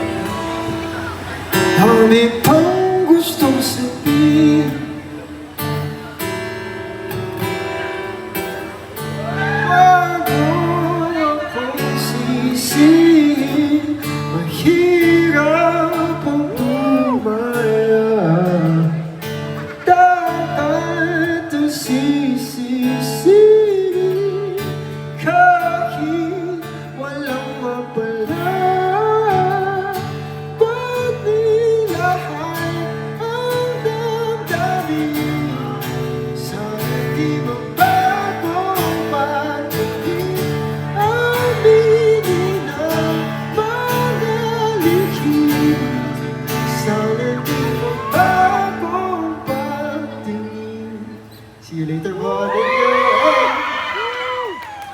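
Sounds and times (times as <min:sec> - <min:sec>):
person singing: 0:00.0 - 0:05.4, 0:09.2 - 0:24.6, 0:36.4 - 0:51.0
strummed acoustic guitar: 0:00.0 - 0:52.2.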